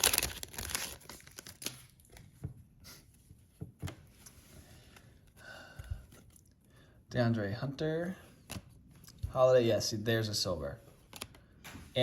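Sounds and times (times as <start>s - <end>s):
foil pack tearing and crinkling: 0.0s - 2.0s.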